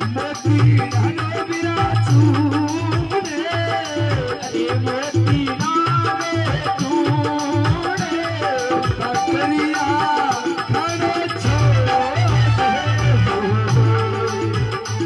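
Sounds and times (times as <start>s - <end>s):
hand drum beat: 0.0s - 15.0s
folk melody lead instrument: 8.4s - 15.0s.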